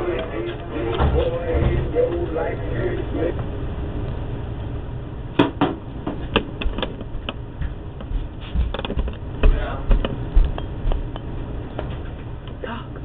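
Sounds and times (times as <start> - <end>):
irregular clicks and knocks: 6.2 - 12.6.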